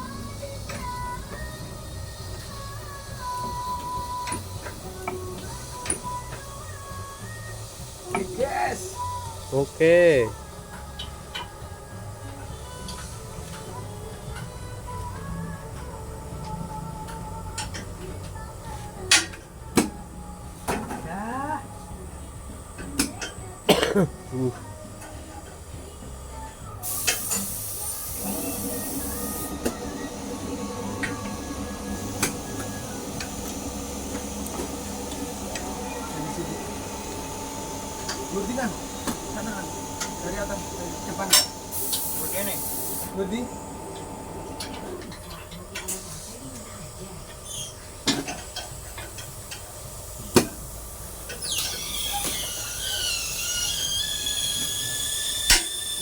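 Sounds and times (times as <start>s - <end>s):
mechanical running noise: 24.7s - 56.0s
rushing air hiss: 26.8s - 43.7s.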